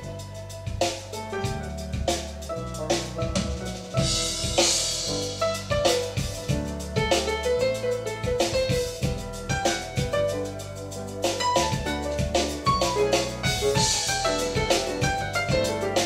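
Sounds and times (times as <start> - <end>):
instrumental jazz music: 0.0 - 16.0.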